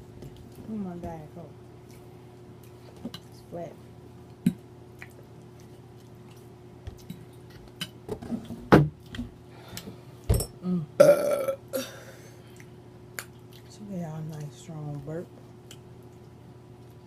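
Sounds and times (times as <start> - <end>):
person burping: 10.4 - 12.1.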